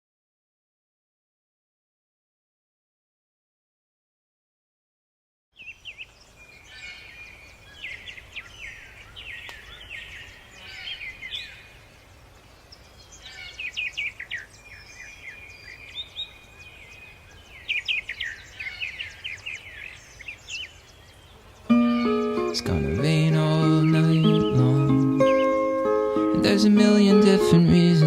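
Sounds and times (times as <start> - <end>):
songbirds chirping and trilling: 5.5 - 28.0.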